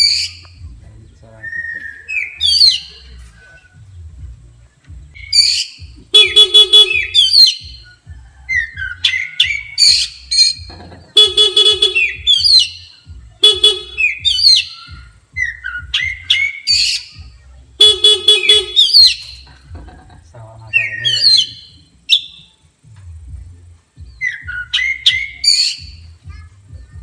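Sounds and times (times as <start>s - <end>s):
bird calling with buzzy notes and whistles: 0.0s - 20.0s, 20.6s - 27.0s.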